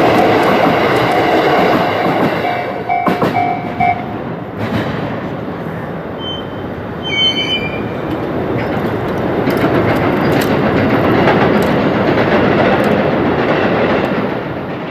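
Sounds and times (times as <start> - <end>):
train wheels rumbling on rails: 0.0 - 14.9
high wheel squeal: 6.1 - 9.3.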